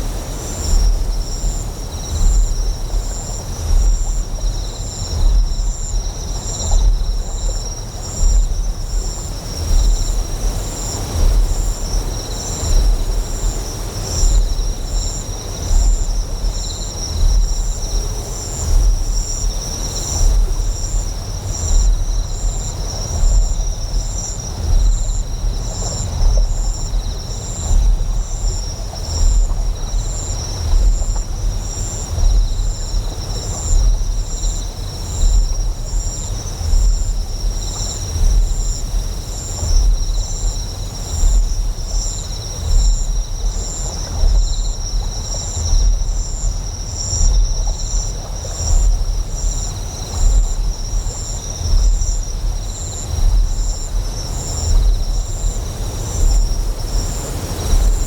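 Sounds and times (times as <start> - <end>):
flowing water: 0.0 - 58.0
high insect chirping: 0.0 - 58.0.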